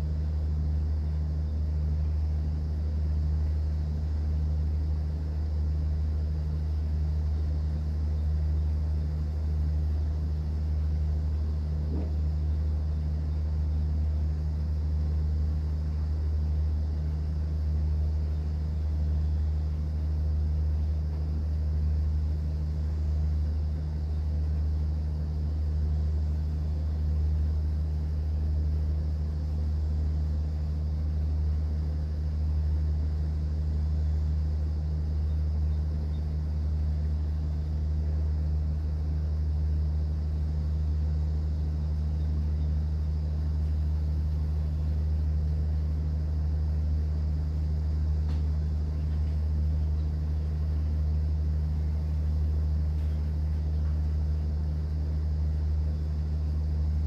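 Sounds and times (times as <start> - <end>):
boat engine drone: 0.0 - 57.0
faint click: 48.3 - 49.4.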